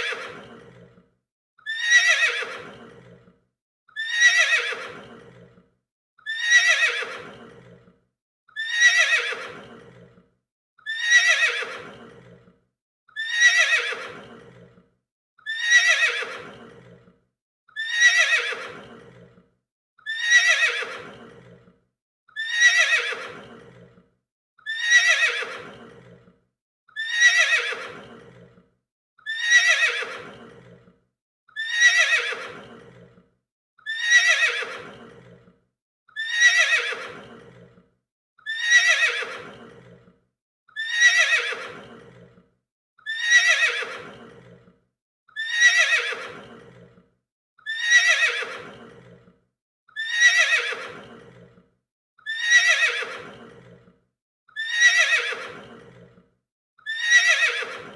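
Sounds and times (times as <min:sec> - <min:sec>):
horse neighing: 0:00.0 - 0:00.9, 0:01.7 - 0:03.2, 0:04.0 - 0:05.5, 0:06.3 - 0:07.9, 0:08.6 - 0:10.1, 0:10.9 - 0:12.4, 0:13.2 - 0:14.7, 0:17.8 - 0:19.3, 0:20.1 - 0:21.6, 0:22.4 - 0:23.9, 0:24.7 - 0:26.2, 0:27.0 - 0:28.5, 0:29.3 - 0:30.8, 0:31.6 - 0:33.0, 0:33.9 - 0:35.4, 0:36.2 - 0:37.6, 0:38.5 - 0:40.0, 0:40.8 - 0:42.2, 0:43.1 - 0:44.6, 0:45.4 - 0:46.9, 0:47.7 - 0:49.2, 0:50.0 - 0:51.1, 0:52.3 - 0:53.8, 0:54.6 - 0:56.0, 0:57.0 - 0:57.8.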